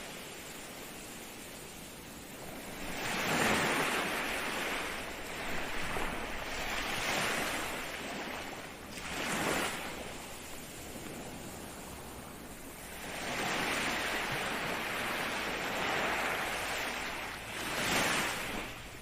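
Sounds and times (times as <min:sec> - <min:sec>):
ocean waves breaking on shore: 0:00.0 - 0:19.0.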